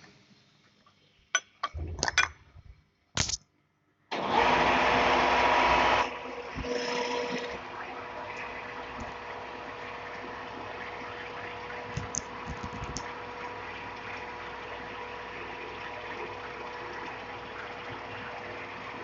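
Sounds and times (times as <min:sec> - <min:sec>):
lathe humming and whining: 0:04.2 - 0:19.0.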